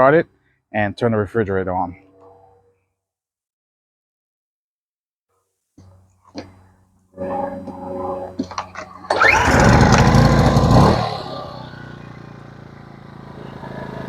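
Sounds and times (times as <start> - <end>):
generator engine starting and running: 6.4 - 14.0.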